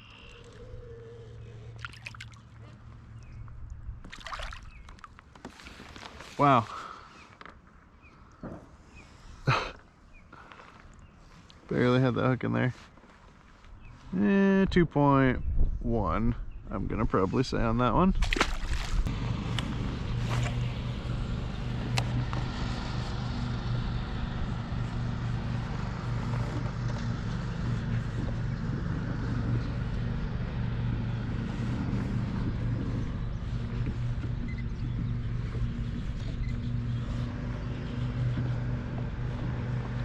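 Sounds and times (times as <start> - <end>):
low motor drone: 0.0 - 5.4, 18.3 - 40.0.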